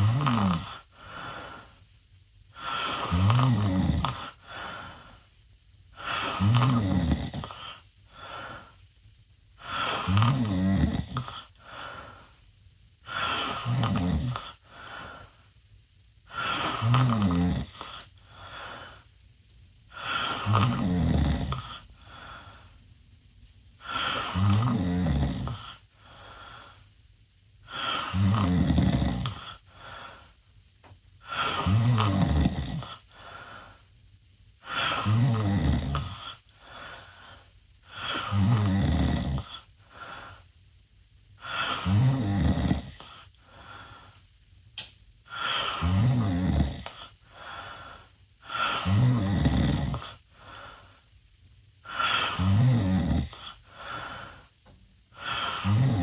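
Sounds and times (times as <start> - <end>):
boy snoring loudly: 0.0 - 0.9, 2.6 - 4.5, 6.0 - 7.8, 9.6 - 11.5, 13.1 - 14.6, 16.3 - 18.0, 19.9 - 21.9, 23.8 - 25.8, 27.7 - 29.6, 31.2 - 33.0, 34.6 - 36.4, 37.9 - 39.7, 41.4 - 43.2, 45.3 - 47.1, 48.4 - 50.2, 51.8 - 54.0, 55.2 - 56.0.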